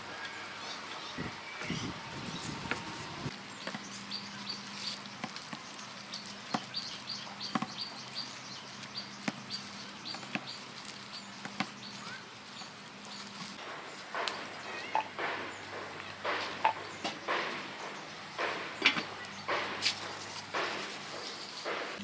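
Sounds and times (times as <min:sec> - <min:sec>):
small bird chirping: 0:05.9 - 0:21.7
light knocks: 0:13.6 - 0:22.0.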